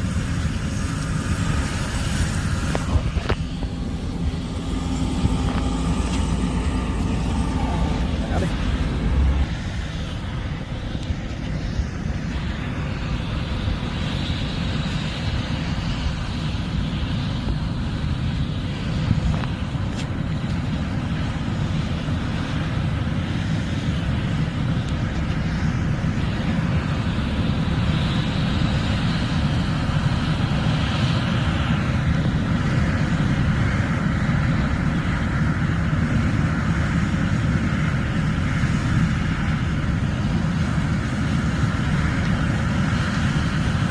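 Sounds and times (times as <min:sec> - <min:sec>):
machinery hiss: 0:00.0 - 0:15.2
combine harvester engine rumble: 0:00.0 - 0:43.9.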